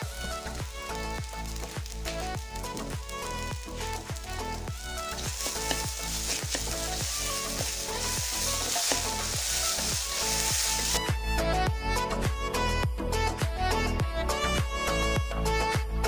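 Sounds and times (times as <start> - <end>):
food sizzling in a pan: 0.0 - 11.2
background music with a beat: 0.0 - 16.0.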